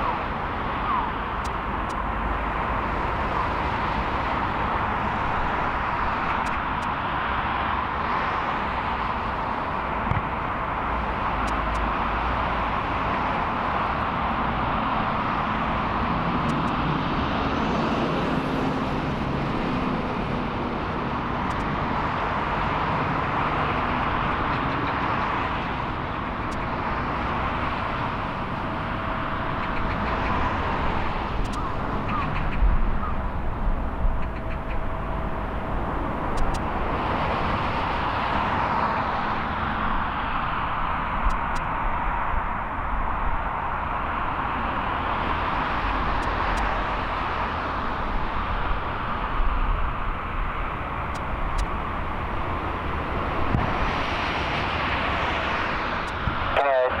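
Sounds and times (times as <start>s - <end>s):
faint steady tone: 0.0s - 7.0s, 26.4s - 42.0s, 43.5s - 56.6s
jet engines rushing: 0.0s - 17.0s, 19.0s - 57.0s.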